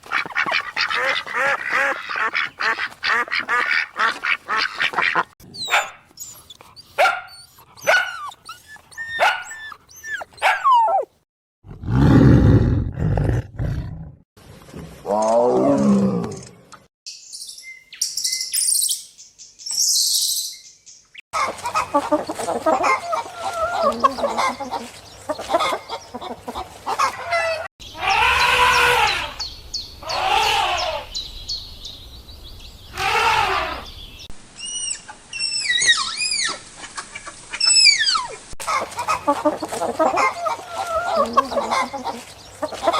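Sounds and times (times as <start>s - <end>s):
deep animal roar: 11.6s - 16.5s
pitched animal calls: 21.4s - 29.4s, 30.0s - 31.1s, 33.0s - 33.9s, 34.6s - 42.9s
animal chirping calls: 34.6s - 36.6s.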